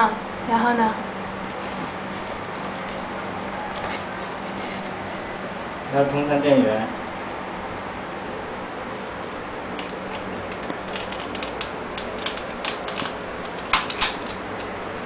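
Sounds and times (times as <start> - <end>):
sharp clicks and taps: 9.8 - 14.8.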